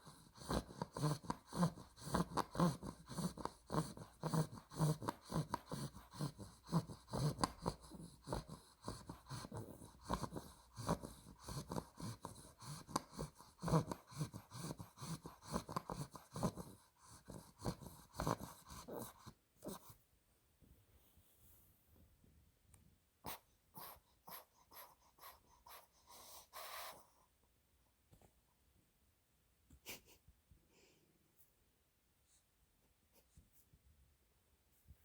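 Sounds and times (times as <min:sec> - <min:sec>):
puppy snoring: 0:00.0 - 0:20.0.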